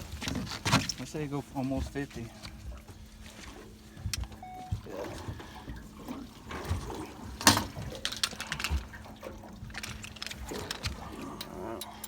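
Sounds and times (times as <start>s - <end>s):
water splashing and dripping: 0.9s - 12.0s.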